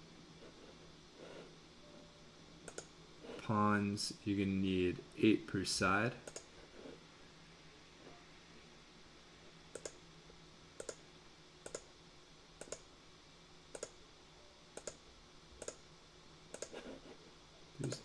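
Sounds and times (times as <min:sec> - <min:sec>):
computer mouse clicking: 0:02.6 - 0:02.9, 0:06.2 - 0:06.5, 0:09.7 - 0:10.0, 0:10.8 - 0:11.0, 0:11.6 - 0:11.9, 0:12.6 - 0:12.9, 0:13.7 - 0:14.0, 0:14.8 - 0:15.0, 0:15.6 - 0:15.8, 0:16.5 - 0:16.9, 0:17.8 - 0:18.0.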